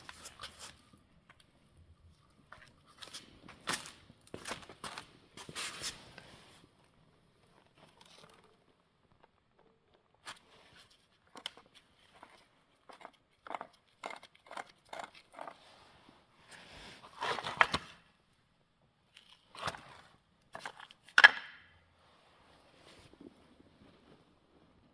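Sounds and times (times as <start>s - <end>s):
hard objects clicking and knocking: 11.2s - 15.6s, 19.6s - 21.6s.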